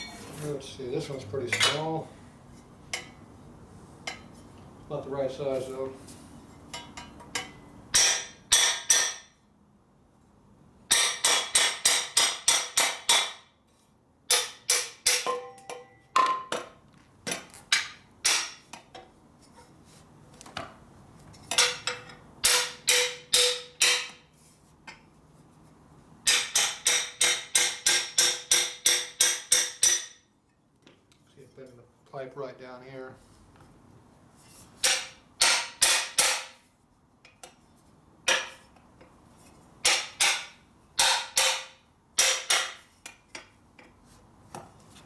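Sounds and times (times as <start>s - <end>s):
metal pipe ringing: 15.3s - 16.1s.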